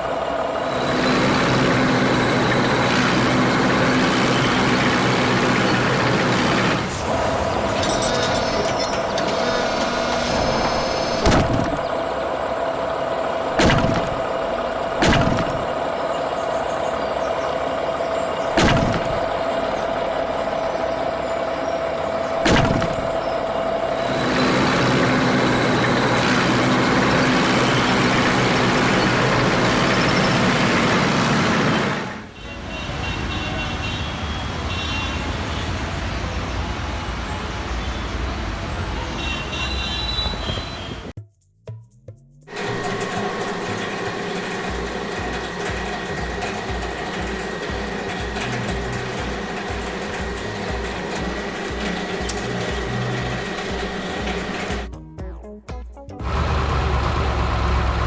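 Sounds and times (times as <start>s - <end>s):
steady machine whine: 0.0s - 32.4s, 42.5s - 54.9s
heavy machinery running: 0.0s - 41.1s, 42.5s - 54.9s, 56.2s - 58.0s
sharp knocks: 7.8s - 12.0s, 13.6s - 15.9s, 18.5s - 20.0s, 22.4s - 23.6s.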